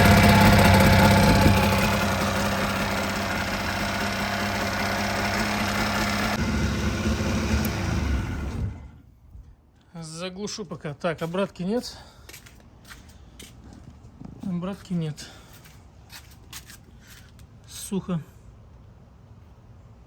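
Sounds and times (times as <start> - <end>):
outboard motor running: 0.0 - 9.0.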